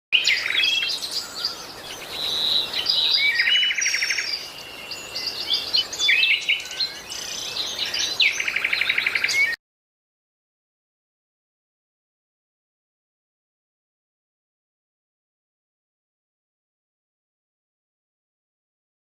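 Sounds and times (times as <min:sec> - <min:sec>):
songbirds singing and chirping: 0:00.1 - 0:09.6.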